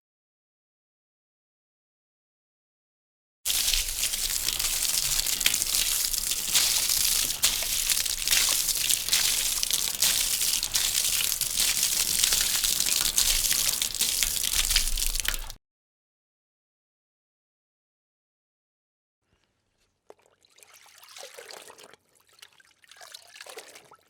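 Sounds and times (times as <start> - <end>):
rushing splashing water: 3.5 - 15.6.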